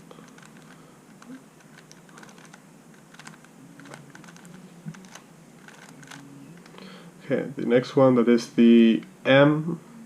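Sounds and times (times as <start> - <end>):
puzzle cube turning clicks: 0.2 - 6.8.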